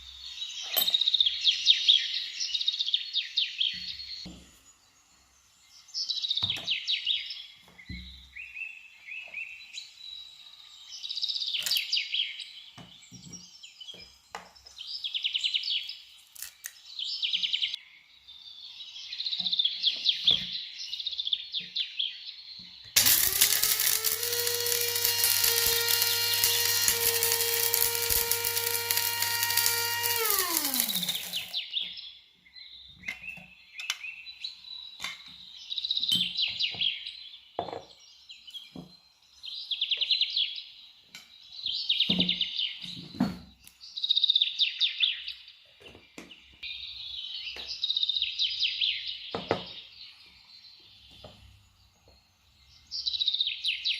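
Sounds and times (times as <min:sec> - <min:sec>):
birds chirping in trills: 0:00.0 - 0:53.9
kitchen appliance motor running: 0:23.0 - 0:31.6.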